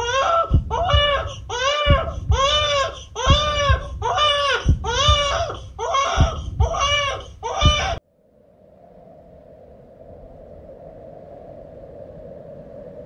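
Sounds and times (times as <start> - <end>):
infant crying: 0.0 - 8.0.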